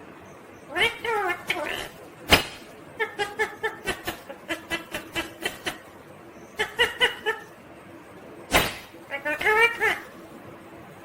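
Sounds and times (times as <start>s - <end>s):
parakeet chattering: 0.6s - 7.6s, 8.5s - 10.2s.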